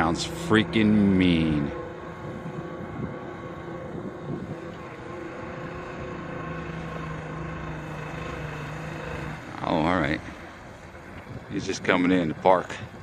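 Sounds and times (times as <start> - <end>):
distant boat engine droning: 0.0 - 13.0.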